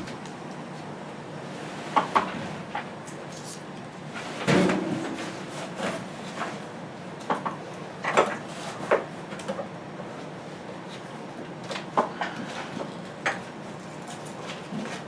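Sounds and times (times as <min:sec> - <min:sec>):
objects knocking and clattering: 0:04.4 - 0:06.5.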